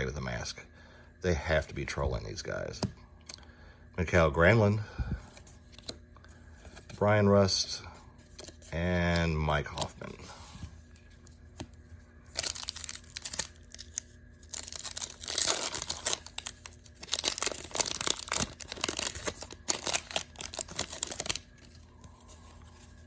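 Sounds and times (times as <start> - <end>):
foil wrapper tearing and crinkling: 12.3 - 21.8.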